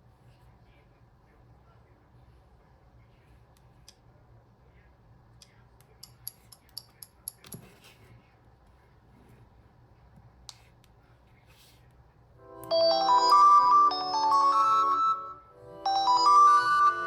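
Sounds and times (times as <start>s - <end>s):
smartphone ringtone melody: 12.4s - 17.0s.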